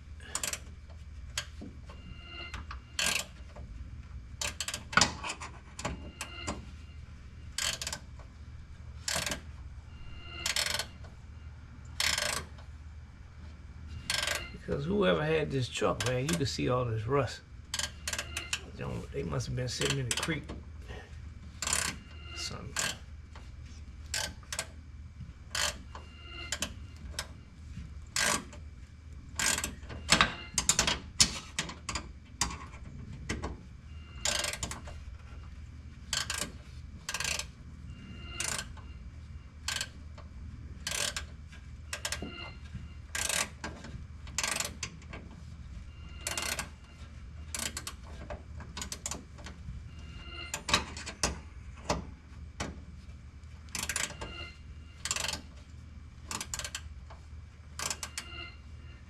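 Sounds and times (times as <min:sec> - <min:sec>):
ratchet wrench clicking: 0:12.0 - 0:12.6, 0:25.5 - 0:25.8, 0:28.2 - 0:28.6, 0:34.2 - 0:34.8, 0:36.1 - 0:37.5, 0:39.6 - 0:40.0, 0:40.8 - 0:41.3, 0:43.1 - 0:43.6, 0:44.4 - 0:44.9, 0:46.2 - 0:46.7, 0:47.5 - 0:48.0, 0:55.0 - 0:55.4, 0:56.3 - 0:56.8.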